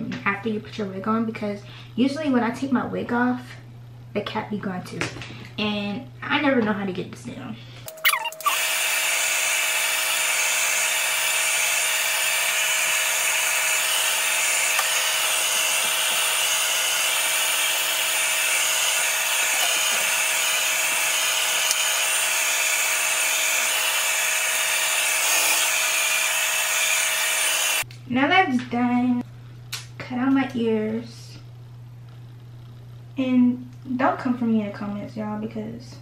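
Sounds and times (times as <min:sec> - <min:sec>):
hair dryer blowing: 0:07.9 - 0:27.8.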